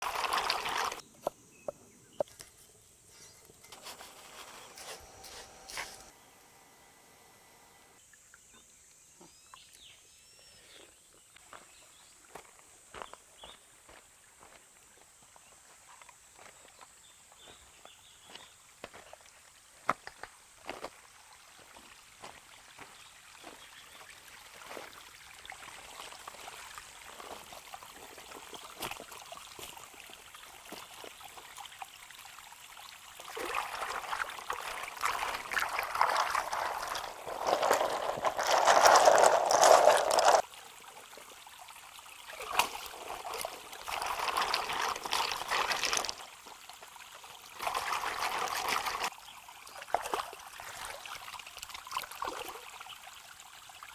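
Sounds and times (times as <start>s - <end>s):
water pouring and splashing: 0.0s - 1.0s, 18.9s - 53.9s.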